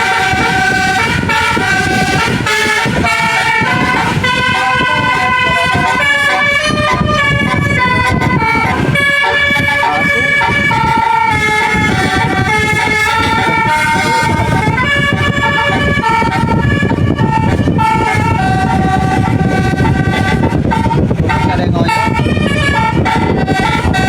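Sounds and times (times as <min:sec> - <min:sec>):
musical air horns playing a tune: 0:00.0 - 0:24.0
steady low rumble: 0:00.0 - 0:24.0.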